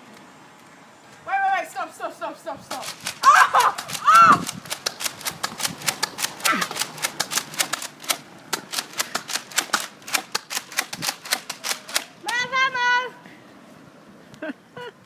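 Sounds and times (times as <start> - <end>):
sharp plastic clicks: 2.7 - 12.5.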